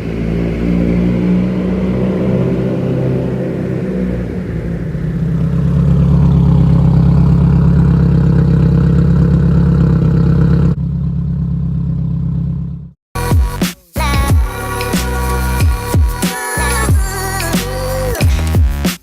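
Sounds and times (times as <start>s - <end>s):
car engine droning: 0.0s - 13.0s.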